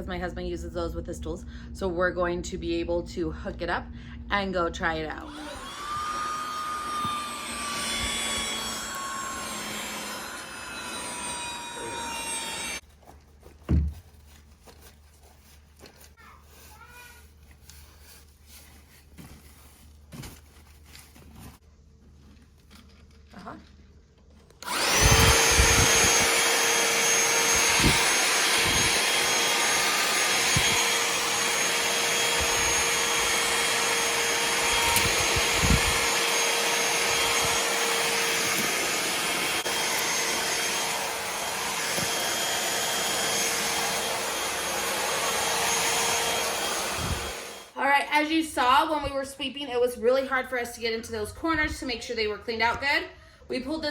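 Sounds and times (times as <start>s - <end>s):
handheld vacuum whining: 5.2s - 12.8s, 24.5s - 47.8s.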